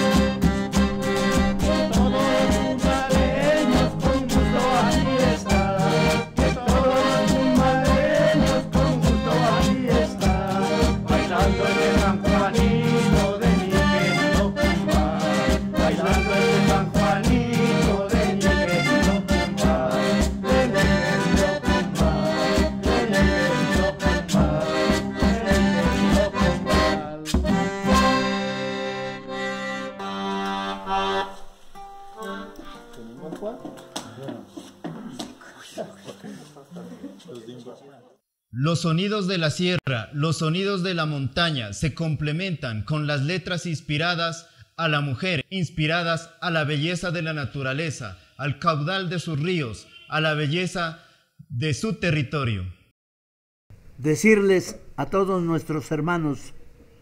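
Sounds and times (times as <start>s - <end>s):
andean band music: 0.0s - 34.4s.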